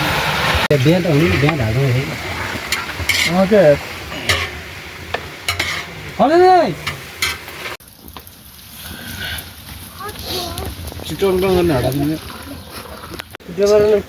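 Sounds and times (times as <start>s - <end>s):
food sizzling in a pan: 0.0s - 12.7s
spoon scraping a pan: 1.2s - 7.8s.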